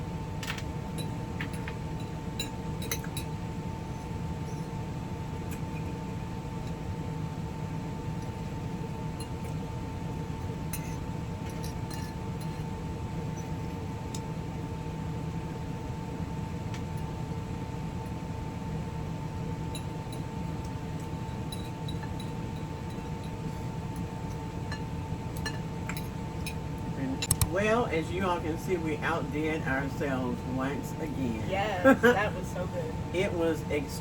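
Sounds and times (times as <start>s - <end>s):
steady background hum: 0.0s - 34.0s
cutlery clinking against dishes: 0.4s - 3.3s, 24.7s - 26.6s.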